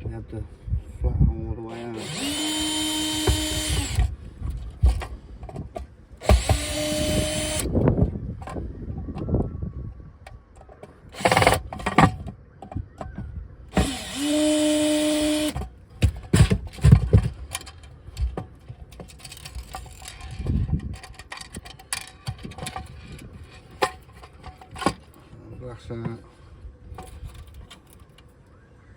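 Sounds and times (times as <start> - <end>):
small power tool motor: 1.7 - 4.2, 6.2 - 7.7, 11.2 - 11.9, 13.7 - 15.6.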